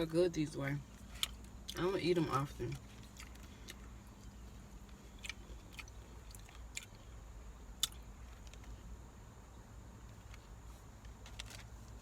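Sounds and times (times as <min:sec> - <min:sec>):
person chewing food: 0:00.9 - 0:01.9, 0:02.6 - 0:08.9.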